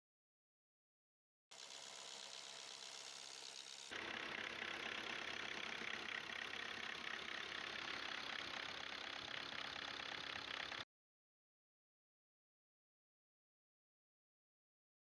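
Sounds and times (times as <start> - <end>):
diesel engine idling clatter: 4.0 - 10.8.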